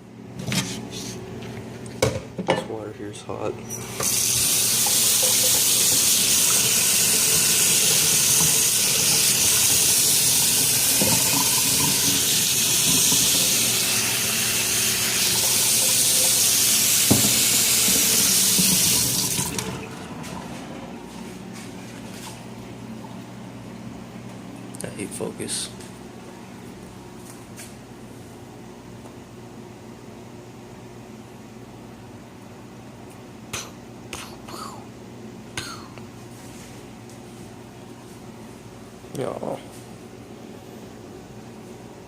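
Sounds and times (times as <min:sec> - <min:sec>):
tap water running into sink: 0:03.9 - 0:20.4.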